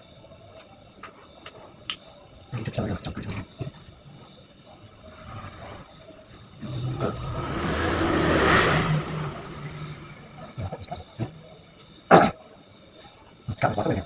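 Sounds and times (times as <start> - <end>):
motor vehicle passing: 6.6 - 11.1.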